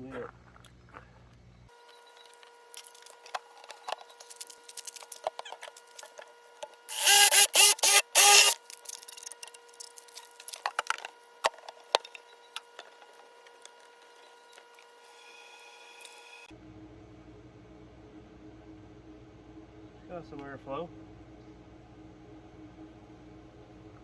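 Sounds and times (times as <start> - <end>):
faint steady hum: 0.0 - 24.0
harsh pipe cutting strokes: 6.9 - 8.7.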